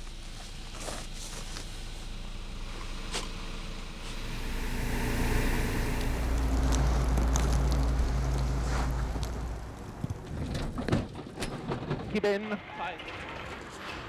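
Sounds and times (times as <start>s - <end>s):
rally car engine running hard: 0.0s - 10.8s.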